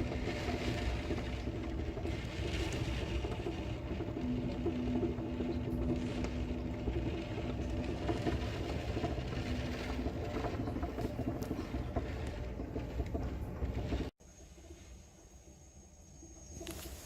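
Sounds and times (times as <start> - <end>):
wind and heavy rain: 0.0 - 12.9
steady hum: 0.0 - 17.0.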